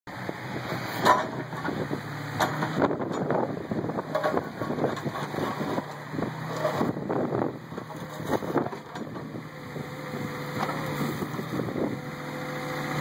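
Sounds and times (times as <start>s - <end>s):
excavator diesel engine running: 0.1s - 13.0s.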